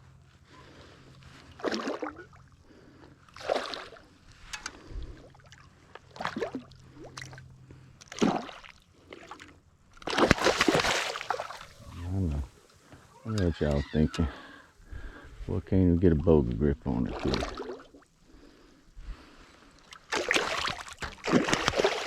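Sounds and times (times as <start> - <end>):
fish splashing in water: 3.4 - 4.1, 8.1 - 11.8, 17.1 - 18.0, 19.8 - 22.0.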